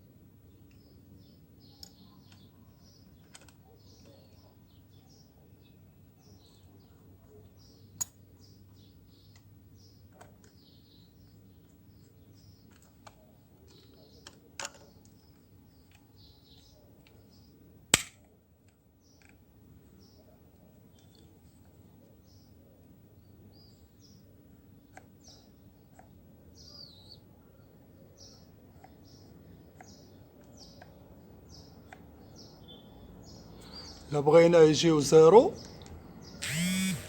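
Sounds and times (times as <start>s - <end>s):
faint bird chirps: 0.5s - 17.6s, 21.9s - 34.1s
clicks of hair clipper blades: 36.4s - 37.0s.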